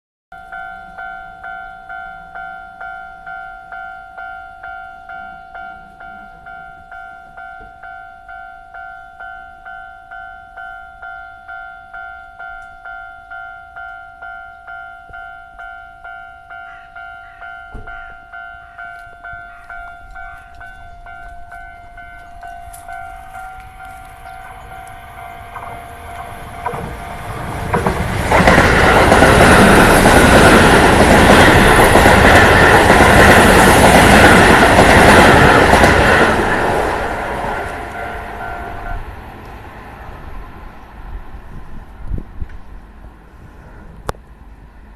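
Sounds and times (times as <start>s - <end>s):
level crossing warning bell: 0.3s - 27.4s, 28.3s - 39.2s
train wheels clattering on rails: 17.4s - 18.1s, 18.8s - 39.6s.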